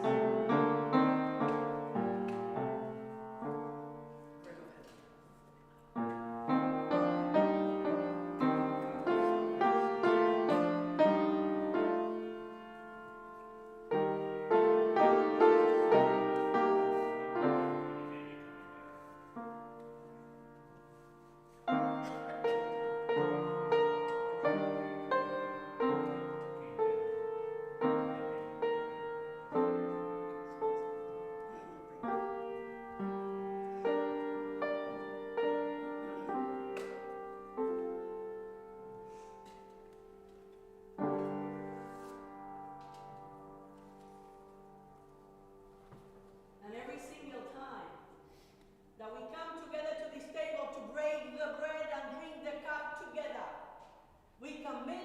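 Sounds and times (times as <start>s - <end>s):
slow solo piano piece: 0.0s - 46.6s.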